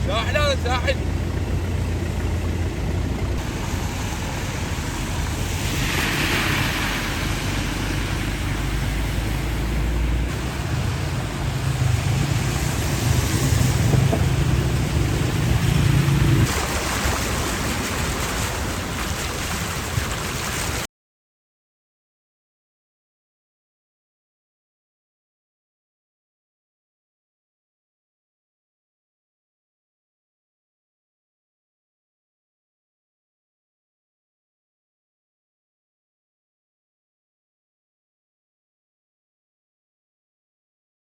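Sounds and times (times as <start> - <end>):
car engine rumble: 0.0 - 20.9
water washing: 0.0 - 20.9
wind on microphone: 10.3 - 20.8.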